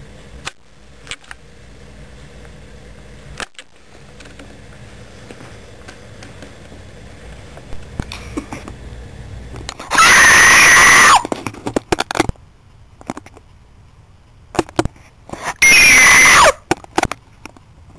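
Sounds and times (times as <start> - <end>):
person screaming loudly: 9.9 - 11.3, 15.6 - 16.6.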